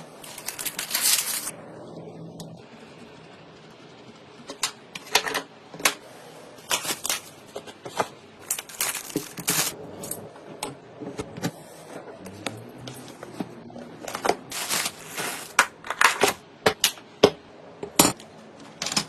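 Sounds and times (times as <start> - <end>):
packaging rustling: 0.2 - 1.5, 6.6 - 10.2, 14.0 - 16.4.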